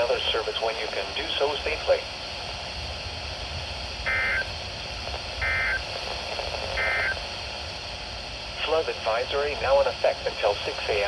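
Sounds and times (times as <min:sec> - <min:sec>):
radio hiss: 0:00.0 - 0:11.0
digital data bursts: 0:04.0 - 0:04.5, 0:05.4 - 0:05.9, 0:06.7 - 0:07.2.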